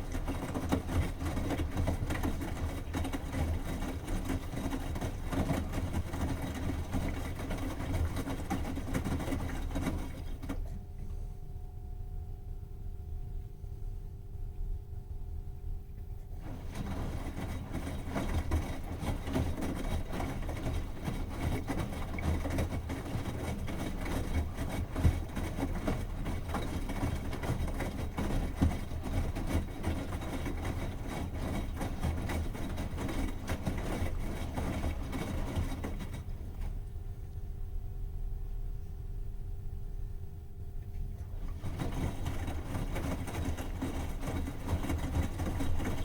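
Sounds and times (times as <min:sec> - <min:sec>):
washing machine drum churning: 0:00.0 - 0:10.8, 0:16.4 - 0:36.9, 0:41.0 - 0:46.0.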